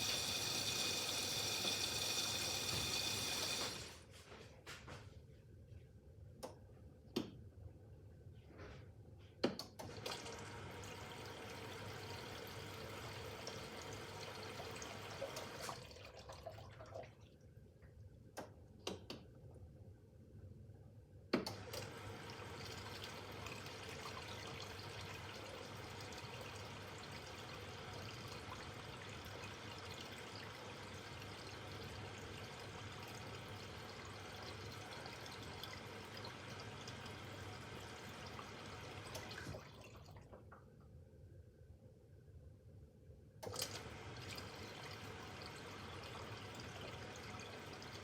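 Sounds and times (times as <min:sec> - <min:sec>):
water rushing into washing machine: 0:00.0 - 0:04.0, 0:09.8 - 0:17.3, 0:21.4 - 0:40.5, 0:43.4 - 0:48.0.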